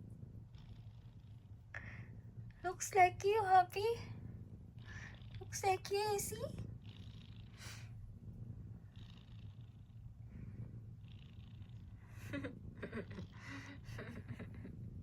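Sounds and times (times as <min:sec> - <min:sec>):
cat snoring: 0:00.4 - 0:02.1, 0:04.8 - 0:05.6, 0:06.5 - 0:08.0, 0:08.8 - 0:12.2.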